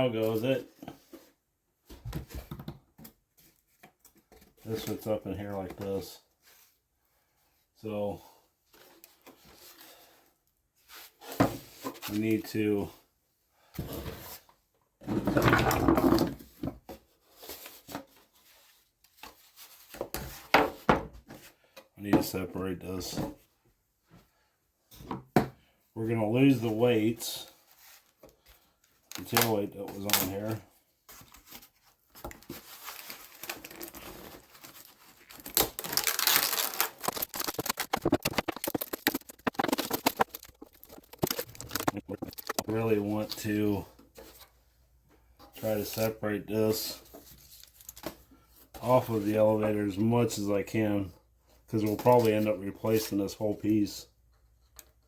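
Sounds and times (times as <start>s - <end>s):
rubbing and rustling: 31.0s - 43.4s
plastic film crinkling and tearing: 32.4s - 42.8s
wood scraping: 35.4s - 43.2s.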